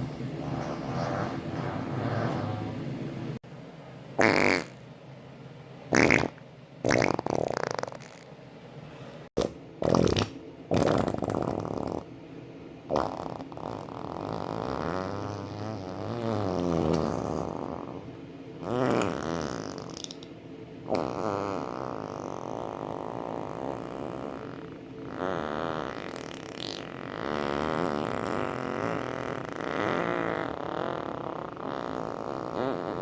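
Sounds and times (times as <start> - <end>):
human farts: 4.2 - 4.8, 5.9 - 8.3, 9.4 - 12.1, 12.9 - 20.3, 20.9 - 33.0.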